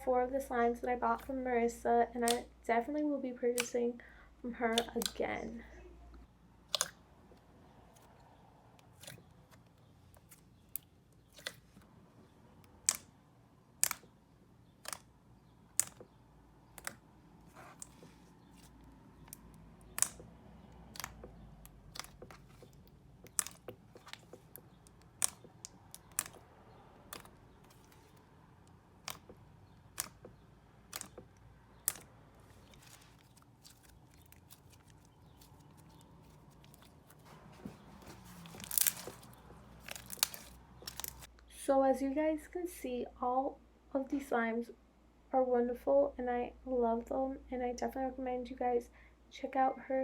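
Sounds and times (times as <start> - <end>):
slime clicking and popping: 2.2 - 2.5, 4.7 - 5.2, 6.7 - 7.0, 13.8 - 14.1, 15.7 - 17.0, 19.2 - 28.2, 29.0 - 37.0, 38.5 - 41.3.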